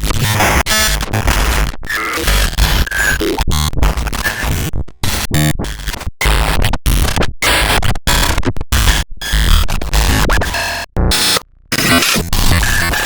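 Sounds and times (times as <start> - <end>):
digital glitch static bursts: 11.1 - 13.0.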